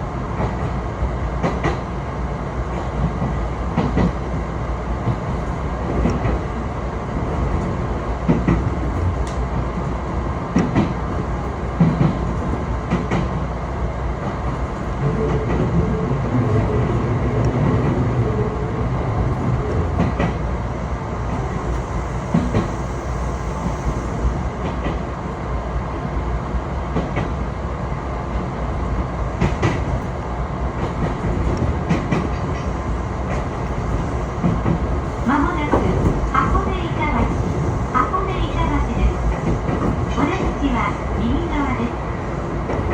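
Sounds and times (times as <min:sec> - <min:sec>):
train rumbling: 0:00.0 - 0:42.9.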